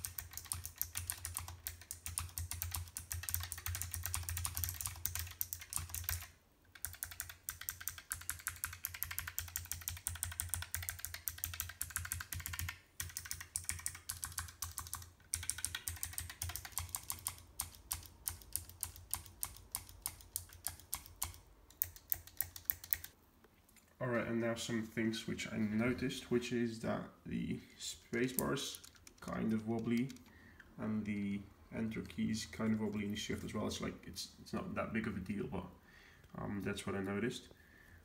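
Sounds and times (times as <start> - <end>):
fast typing on mechanical keyboard: 0.0 - 23.2, 28.3 - 30.3.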